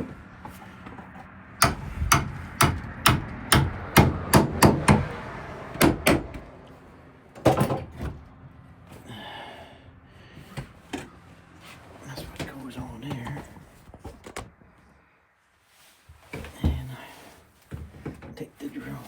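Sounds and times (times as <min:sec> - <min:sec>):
hammer tapping on hinge: 0:01.6 - 0:05.1, 0:05.8 - 0:06.4.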